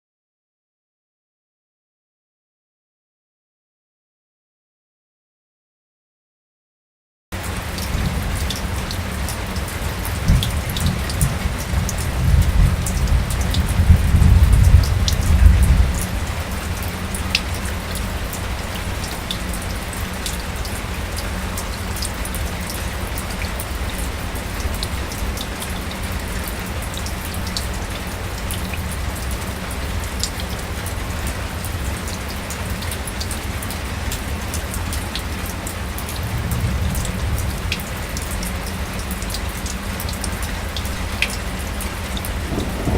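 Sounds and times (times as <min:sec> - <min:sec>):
light rain falling: 0:07.4 - 0:42.9
raindrops pattering: 0:07.4 - 0:42.9
deep low rumble: 0:36.1 - 0:38.6, 0:42.4 - 0:42.9.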